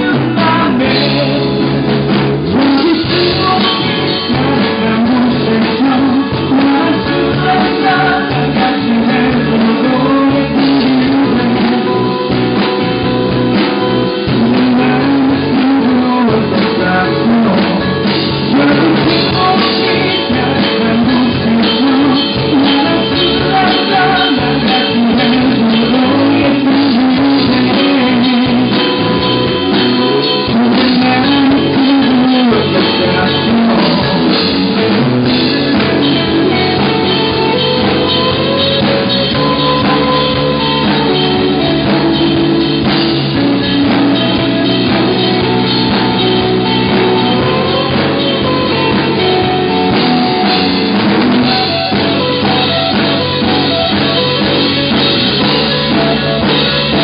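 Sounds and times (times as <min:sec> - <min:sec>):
drum kit beat: 0:00.0 - 0:57.0
electric guitar with bent notes: 0:00.0 - 0:57.0.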